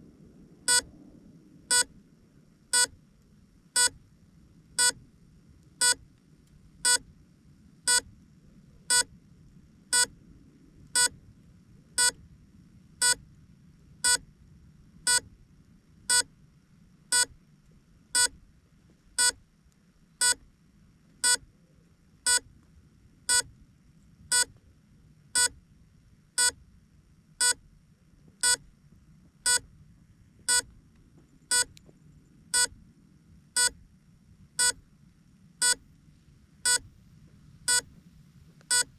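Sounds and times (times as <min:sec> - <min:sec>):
electronic buzzer beeping: 0:00.7 - 0:00.9, 0:01.7 - 0:01.9, 0:02.7 - 0:02.9, 0:03.8 - 0:04.0, 0:04.8 - 0:05.0, 0:06.8 - 0:07.0, 0:07.9 - 0:08.1, 0:09.9 - 0:10.1, 0:14.0 - 0:14.2, 0:15.1 - 0:15.3, 0:17.1 - 0:17.3, 0:20.2 - 0:20.4, 0:21.2 - 0:21.4, 0:23.3 - 0:23.5, 0:24.3 - 0:24.5, 0:25.4 - 0:25.6, 0:27.4 - 0:27.6, 0:28.4 - 0:28.6, 0:30.5 - 0:30.7, 0:31.5 - 0:31.7, 0:33.6 - 0:33.8, 0:34.6 - 0:34.8, 0:37.7 - 0:37.9.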